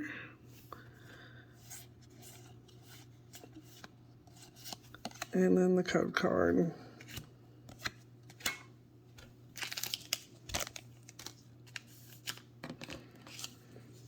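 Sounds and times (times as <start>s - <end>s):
trading cards rustling and crinkling: 1.8s - 5.4s, 9.2s - 14.0s.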